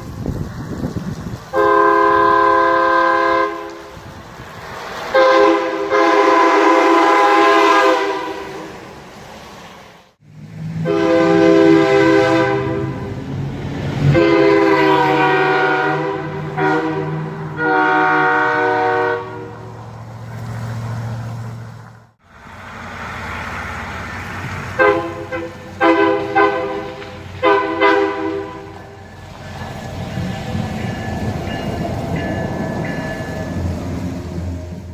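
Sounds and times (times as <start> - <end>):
air horn chord blasts: 5.2 - 8.6, 10.8 - 13.2, 14.1 - 19.6, 24.8 - 29.0.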